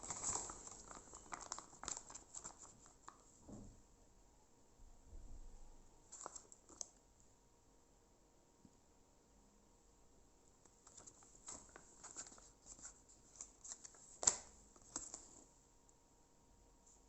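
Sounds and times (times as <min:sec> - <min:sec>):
packets and paper rustling: 0:00.0 - 0:03.2, 0:06.1 - 0:06.9, 0:10.8 - 0:15.5.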